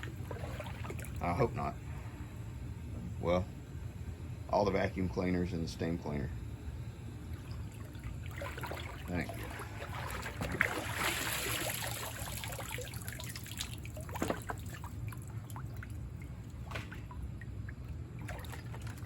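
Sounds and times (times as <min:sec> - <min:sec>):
small water splashes: 0:00.0 - 0:01.3, 0:07.3 - 0:19.0
steady low hum: 0:00.0 - 0:19.0
water trickling and dripping: 0:07.3 - 0:19.0.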